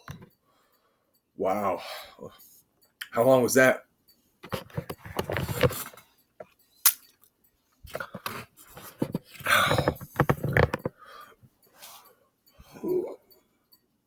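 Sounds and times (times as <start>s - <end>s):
sharp mouth click: 6.9s - 7.1s.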